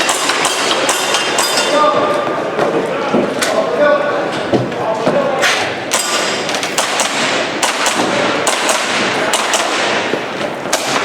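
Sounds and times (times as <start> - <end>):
exhibition hall hum: 0.0 - 11.0
airsoft pistol shots: 5.9 - 10.1, 10.7 - 11.0.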